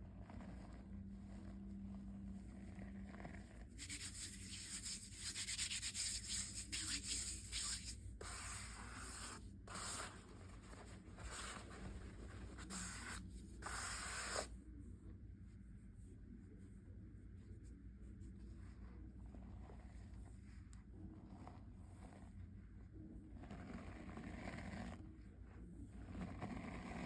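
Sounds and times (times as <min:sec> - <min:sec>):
dry powder crushed and rubbed: 0:02.8 - 0:14.5.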